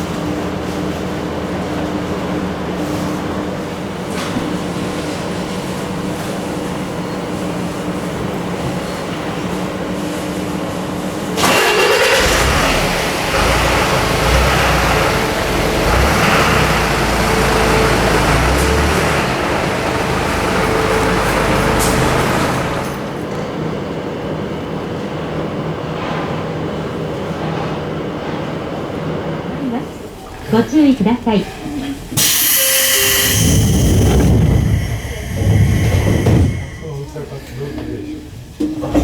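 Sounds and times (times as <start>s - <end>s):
train rumbling past: 2.5s - 39.0s
steady hum: 32.2s - 38.2s.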